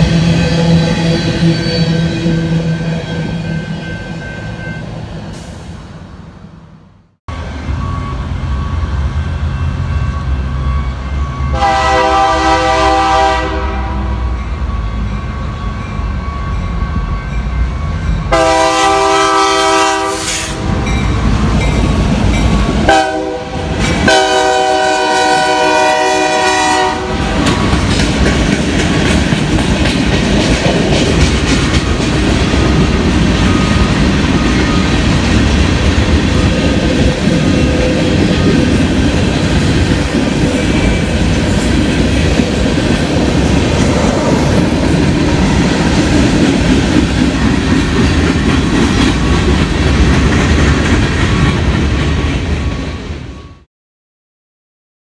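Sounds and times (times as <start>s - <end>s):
diesel locomotives rumbling: 0.0s - 53.5s
train air horn blasts: 11.5s - 14.4s, 18.3s - 20.9s, 22.9s - 27.6s
train wheels clattering on rails: 20.2s - 26.2s, 27.1s - 53.3s.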